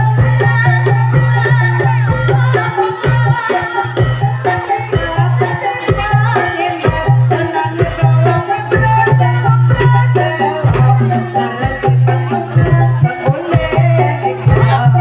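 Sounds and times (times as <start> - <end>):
pitched melody: 0.0 - 15.0.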